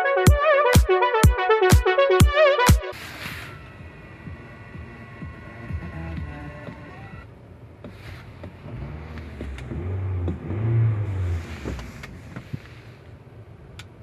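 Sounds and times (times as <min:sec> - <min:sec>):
car engine revving: 0:02.9 - 0:07.3, 0:08.0 - 0:12.7.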